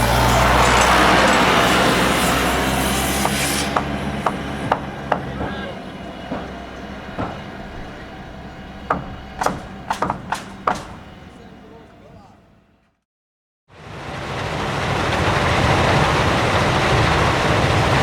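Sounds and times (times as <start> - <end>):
loud mechanical rushing with hum: 0.0 - 11.7
irregular mechanical clicks and knocks: 6.3 - 11.3.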